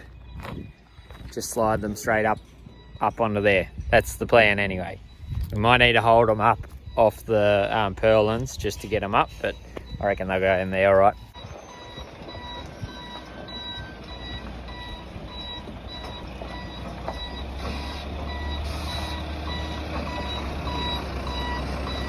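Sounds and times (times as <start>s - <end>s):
reversing alarm beeping: 0.0s - 22.0s
truck engine: 11.1s - 22.0s.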